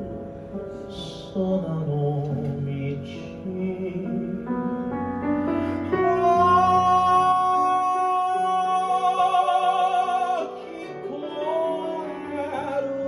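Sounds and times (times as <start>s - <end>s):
piano accompaniment: 0.0s - 13.0s
person singing long high note: 5.9s - 13.0s.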